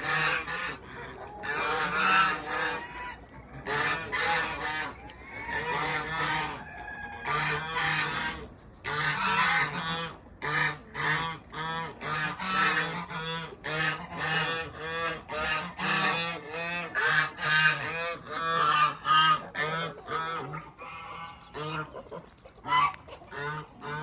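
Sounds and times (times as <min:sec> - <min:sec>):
geese honking: 0:00.0 - 0:24.0.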